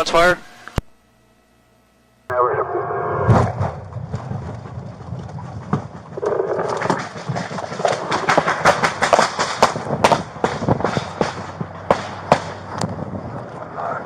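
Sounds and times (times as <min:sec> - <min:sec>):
rapid gunfire: 0:06.8 - 0:12.6.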